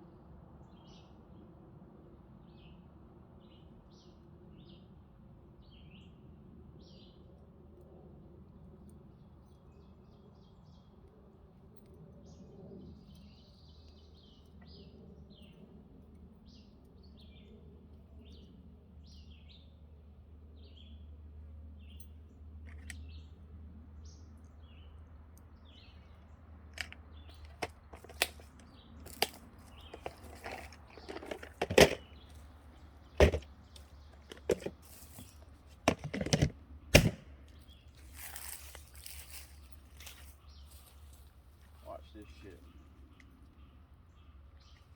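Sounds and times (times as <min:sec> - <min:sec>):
sharp knocks and clicks: 0:26.8 - 0:32.1, 0:33.2 - 0:37.3.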